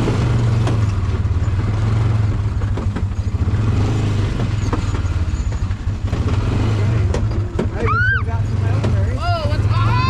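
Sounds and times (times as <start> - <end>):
knocks and rattles: 0.0 - 7.9
vehicle engine running: 0.0 - 10.0.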